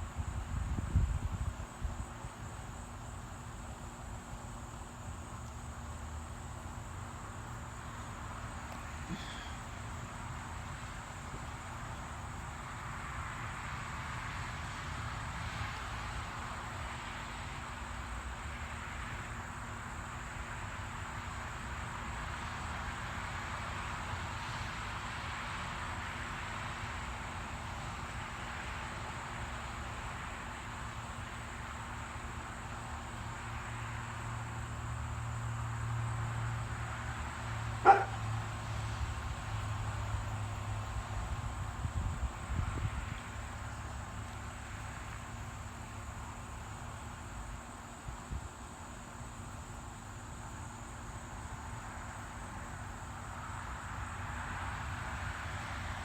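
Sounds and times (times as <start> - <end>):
night insects buzzing: 0.0 - 56.0.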